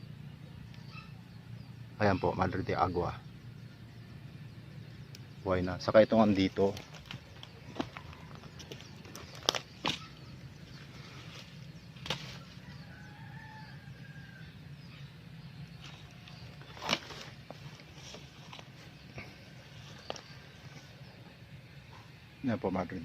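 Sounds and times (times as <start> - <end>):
rustling: 6.3 - 12.7, 15.8 - 21.0
rooster crowing: 12.4 - 14.6.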